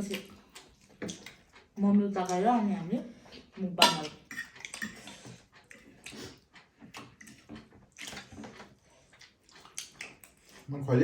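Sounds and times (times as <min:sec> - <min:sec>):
people chewing and slurping: 0:00.0 - 0:11.0.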